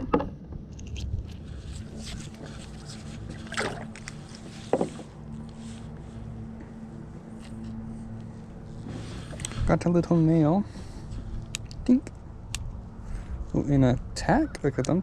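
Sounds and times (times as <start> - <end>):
water noise: 0.0 - 5.0
faint steady hum: 0.0 - 15.0.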